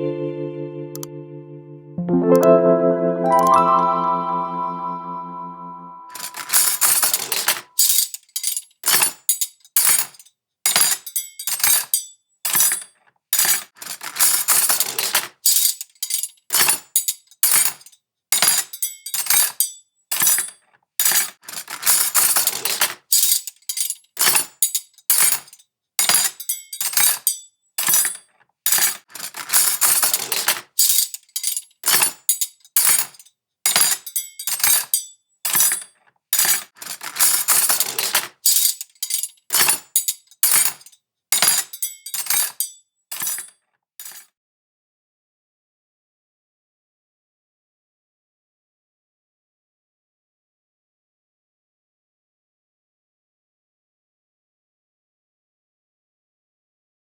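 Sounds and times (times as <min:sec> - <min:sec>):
metal cutlery clinking and clattering: 0:06.2 - 0:44.3.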